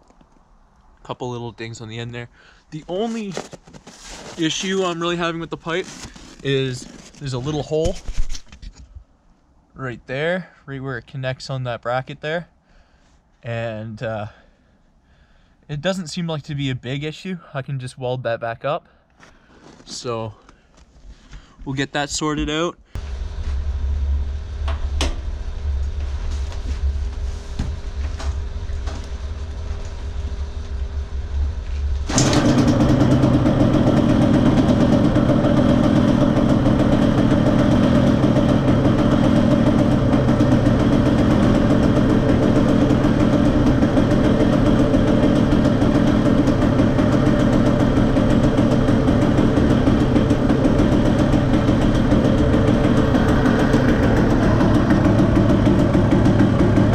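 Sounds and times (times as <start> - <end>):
dirt bike engine idling: 23.0 - 56.9
low rumble: 23.0 - 56.9.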